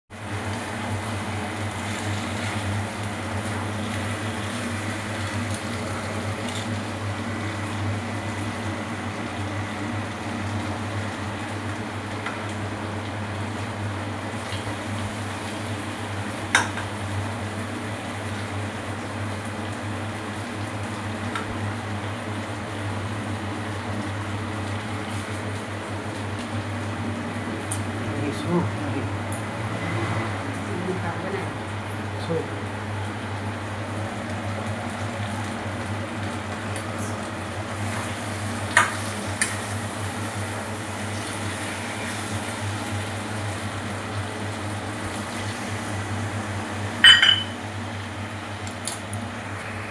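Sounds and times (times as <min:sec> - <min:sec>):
low mechanical hum: 0:00.1 - 0:49.9
utensil clinking on cooking pot: 0:47.0 - 0:47.6.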